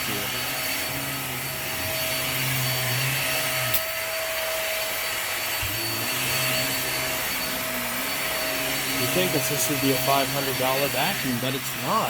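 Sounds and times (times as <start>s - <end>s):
vacuum cleaner running on carpet: 0.0s - 12.0s.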